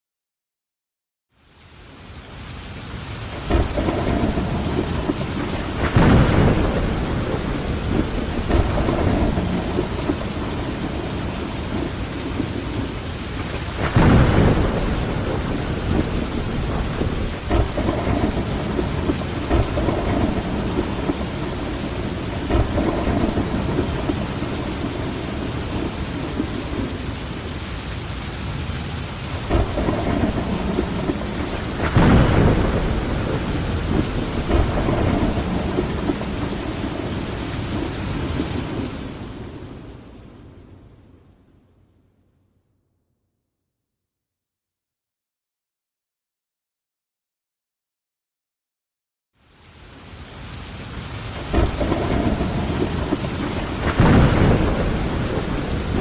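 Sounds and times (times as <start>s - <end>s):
rain against a window: 1.3s - 40.9s, 49.4s - 56.0s
thunder rumbling: 2.9s - 41.2s, 50.7s - 56.0s.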